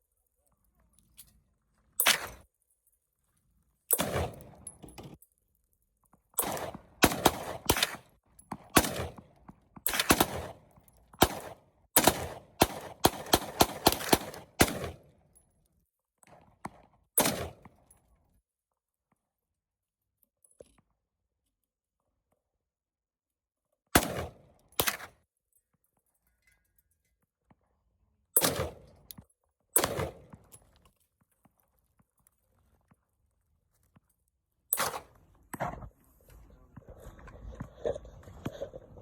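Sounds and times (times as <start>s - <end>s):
gunshots: 3.9s - 4.6s, 6.4s - 10.6s, 11.2s - 15.0s, 17.2s - 17.6s, 24.0s - 25.1s, 28.4s - 28.9s, 29.8s - 30.3s, 34.8s - 35.8s.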